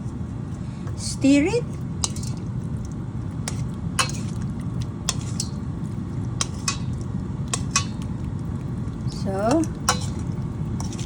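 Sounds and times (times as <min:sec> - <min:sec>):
steady low hum: 0:00.0 - 0:11.0
utensil scraping and clinking pot: 0:00.9 - 0:11.0.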